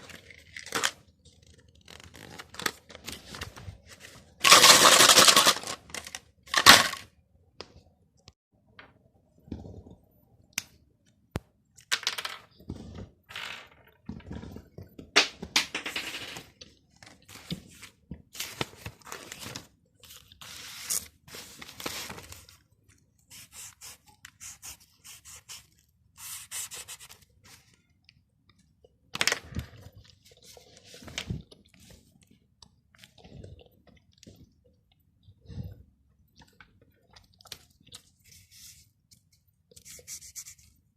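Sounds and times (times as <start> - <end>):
scraping and crackling of toy and sponge: 0.0 - 7.1, 16.9 - 27.9.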